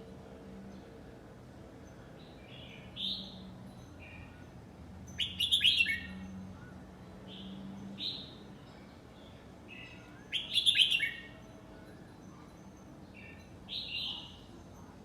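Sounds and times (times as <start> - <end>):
bird singing: 5.2 - 6.7, 9.7 - 11.5.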